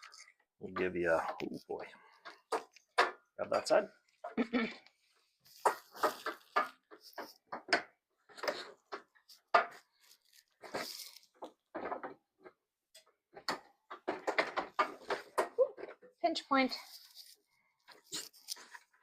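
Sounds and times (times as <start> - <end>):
clicks and knocks on metal frame: 11.7 - 16.1.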